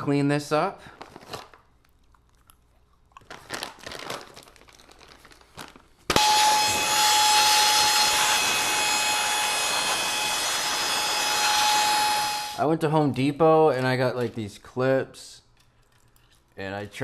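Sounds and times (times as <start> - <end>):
handling and crinkling noises: 0.6 - 6.8, 13.0 - 14.8
small motorised tool whining: 6.1 - 12.6.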